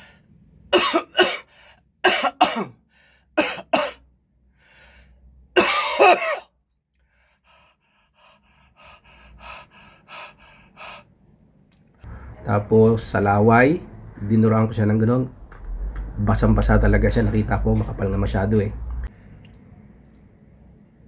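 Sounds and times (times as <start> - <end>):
man coughing: 0.7 - 2.8, 3.4 - 4.0, 5.6 - 6.5
quick short breaths: 7.0 - 11.1.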